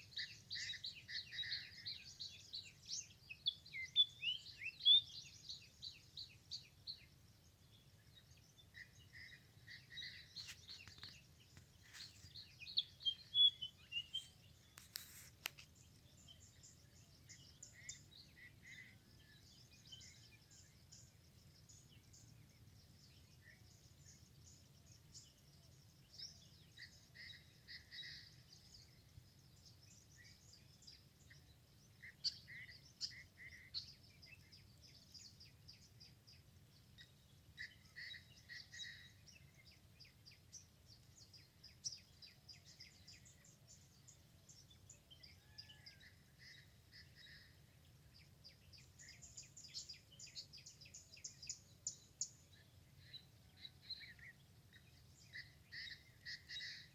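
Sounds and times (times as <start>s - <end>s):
birds chirping and calling: 8.4s - 19.0s.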